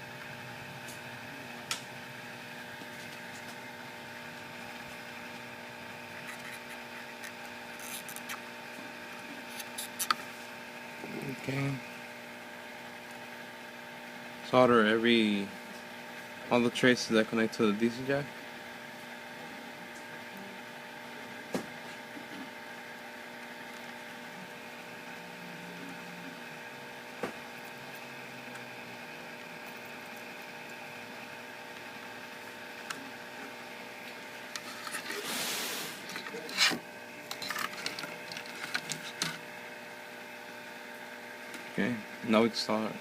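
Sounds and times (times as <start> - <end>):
bench equipment humming: 0.0 - 43.0
small ticks and scrapes: 6.1 - 8.5, 9.4 - 10.5, 34.5 - 39.4
brief hiss: 35.2 - 36.0.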